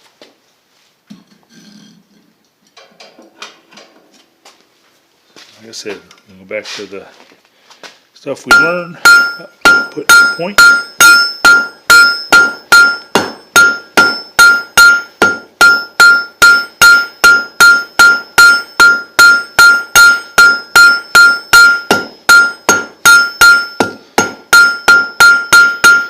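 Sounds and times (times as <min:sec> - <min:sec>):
hammer striking steel on anvil: 0:08.5 - 0:26.0.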